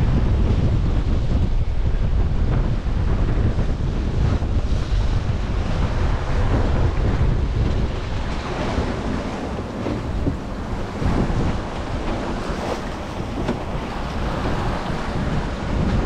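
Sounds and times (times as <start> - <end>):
wind buffeting microphone: 0.0 - 16.0
waves rushing: 3.0 - 16.0.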